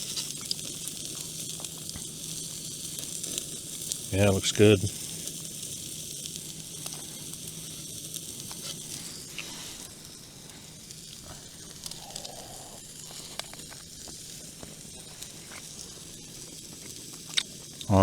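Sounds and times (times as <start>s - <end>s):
steak sizzling on a grill: 0.0s - 18.0s.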